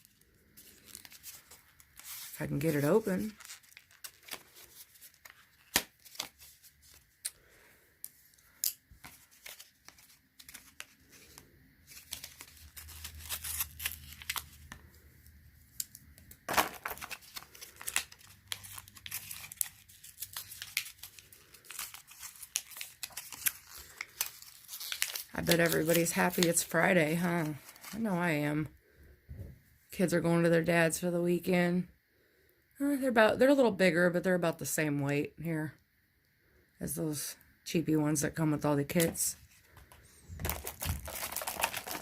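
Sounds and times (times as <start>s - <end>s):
packaging being torn open: 3.3s - 6.6s, 8.6s - 14.7s, 16.5s - 26.5s, 40.4s - 42.0s.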